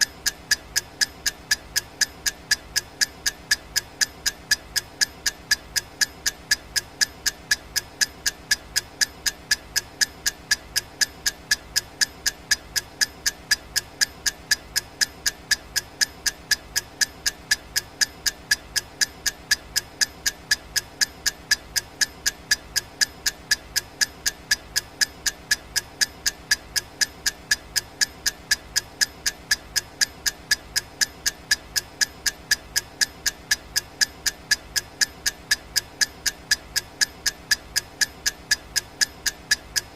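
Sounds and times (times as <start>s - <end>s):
clock ticking: 0.0s - 39.9s.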